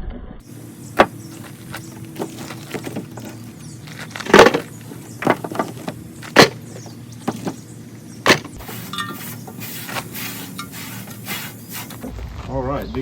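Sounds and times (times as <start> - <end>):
firewood knocking: 1.0 - 7.6, 8.2 - 8.7.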